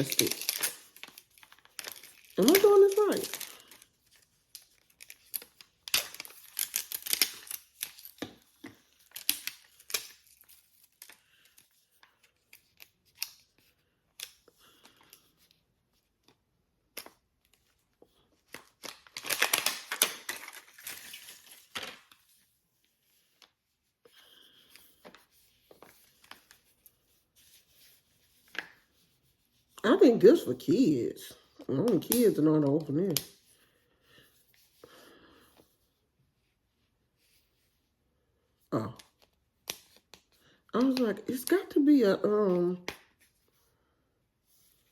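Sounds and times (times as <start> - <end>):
packaging crinkling and tearing: 0.0 - 15.3, 16.9 - 22.4, 31.6 - 33.4.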